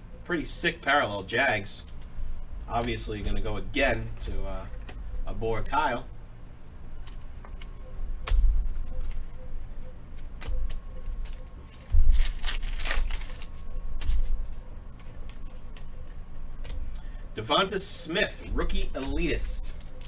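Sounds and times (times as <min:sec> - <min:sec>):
cards clicking and thumping: 0:02.7 - 0:03.5, 0:07.0 - 0:17.0, 0:18.4 - 0:20.0
packaging rustling: 0:08.4 - 0:16.8, 0:18.8 - 0:20.0.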